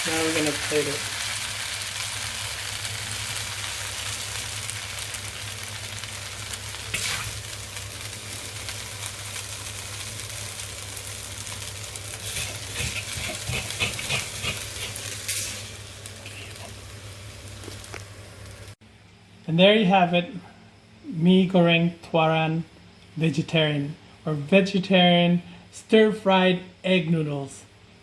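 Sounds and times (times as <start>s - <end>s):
noodles sizzling in a wok: 0.0s - 18.8s
metal spatula scraping wok: 6.9s - 7.4s, 12.2s - 16.7s.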